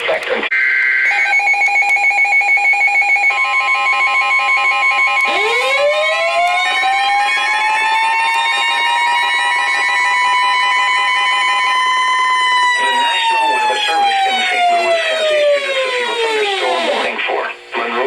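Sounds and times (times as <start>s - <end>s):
steady high tone: 0.5s - 17.2s
siren wailing: 0.6s - 17.2s.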